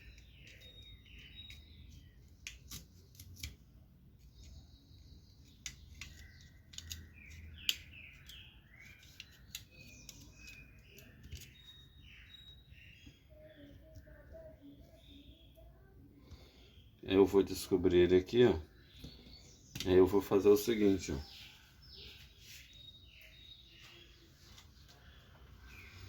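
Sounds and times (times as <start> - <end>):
birds chirping: 0.0 - 3.2, 4.1 - 26.0
hand tool clicks and snips: 5.5 - 11.5.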